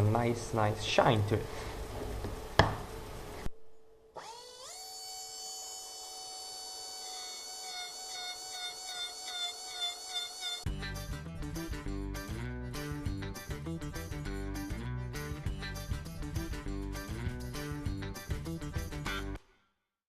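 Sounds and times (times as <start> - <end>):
die grinder whining: 4.2 - 10.7.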